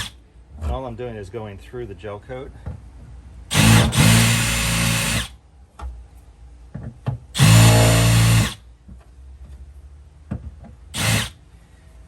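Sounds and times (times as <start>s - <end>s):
power drill running: 3.5s - 5.3s, 7.4s - 8.6s, 11.0s - 11.4s.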